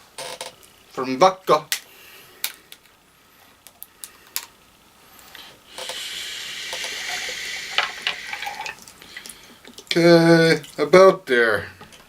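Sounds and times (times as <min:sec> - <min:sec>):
liquid pouring into glass of ice: 0:07.0 - 0:08.9.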